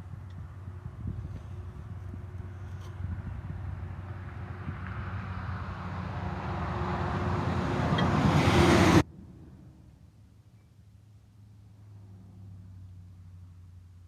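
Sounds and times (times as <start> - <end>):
engine running: 0.0 - 10.0.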